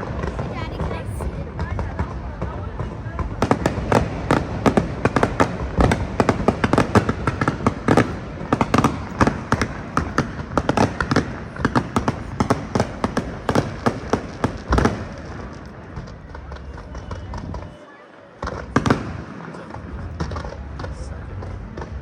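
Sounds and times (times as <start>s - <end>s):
fireworks bangs and crackles: 0.0s - 22.0s.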